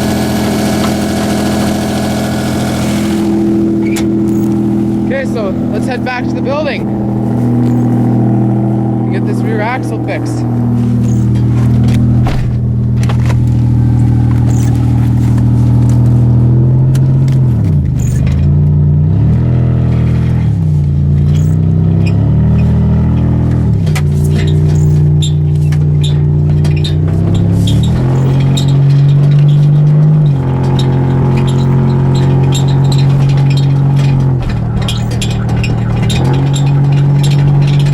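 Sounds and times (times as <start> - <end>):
car engine running: 0.0 - 37.9.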